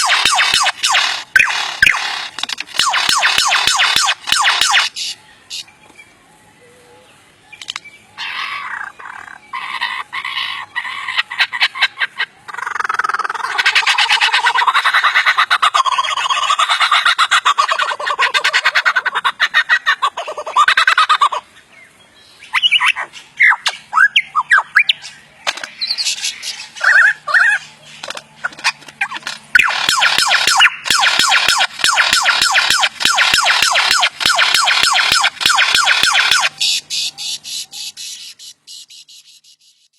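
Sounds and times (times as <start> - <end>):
bird screeching: 0.0 - 5.6, 8.2 - 21.4, 28.6 - 39.2
bird squawking: 0.0 - 5.8, 7.5 - 21.6, 22.4 - 39.9
bird chirps and whistles: 22.5 - 25.2.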